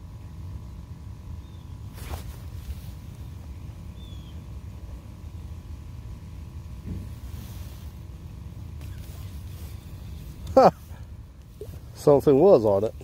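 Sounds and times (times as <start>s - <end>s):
faint bird chirps: 1.4s - 1.9s, 3.9s - 4.5s.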